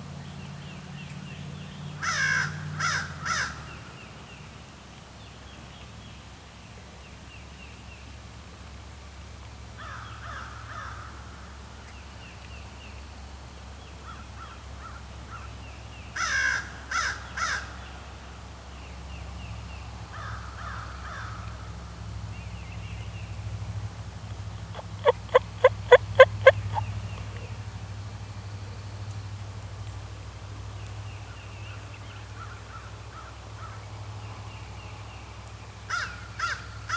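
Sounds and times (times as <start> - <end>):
distant turkeys gobbling: 24.6 - 27.5
crow cawing: 25.0 - 26.8.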